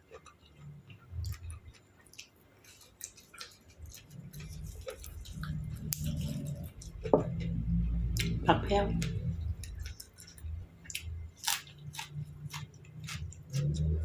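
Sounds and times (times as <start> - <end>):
person chewing food: 0.0 - 8.4, 9.0 - 14.0
low hum: 3.9 - 14.0.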